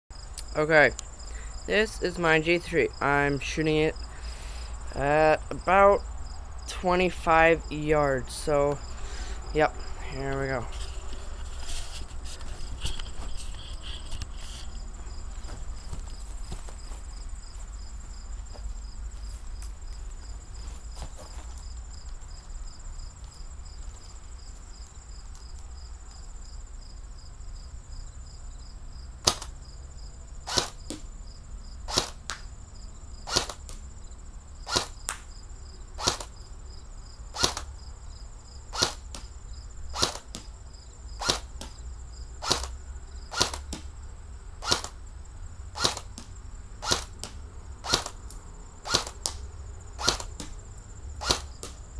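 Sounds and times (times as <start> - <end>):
insects chirping: 0.1 - 51.9
airsoft rifle shots: 29.2 - 29.6, 30.5 - 31.0, 31.9 - 32.4, 33.3 - 33.8, 34.6 - 35.2, 36.0 - 36.3, 37.3 - 37.7, 38.7 - 39.3, 39.9 - 40.4, 41.2 - 41.7, 42.4 - 43.9, 44.6 - 45.0, 45.8 - 48.2, 48.8 - 49.4, 50.0 - 50.6, 51.2 - 51.8.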